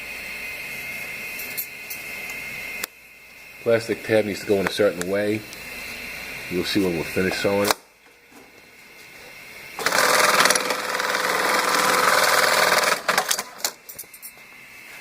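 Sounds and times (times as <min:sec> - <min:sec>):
sewing machine running fast: 0:09.8 - 0:13.8
sewing machine stopping clicks: 0:09.8 - 0:13.8.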